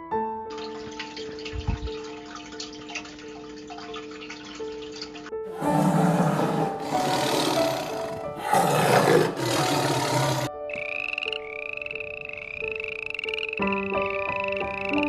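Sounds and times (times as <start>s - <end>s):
background music melody: 0.0s - 15.0s
rough roaring animal calls: 5.5s - 10.5s
high rhythmic animal call: 5.6s - 11.6s.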